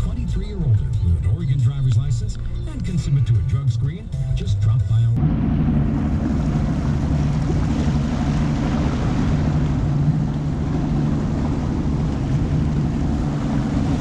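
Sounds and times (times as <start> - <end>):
outboard motor running: 5.2 - 14.0.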